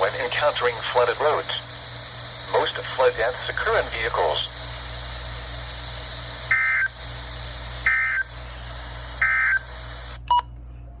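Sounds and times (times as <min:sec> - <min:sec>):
radio hiss and hum: 0:00.0 - 0:11.0
digital data tone bursts: 0:06.5 - 0:07.0, 0:07.8 - 0:08.3, 0:09.2 - 0:09.7.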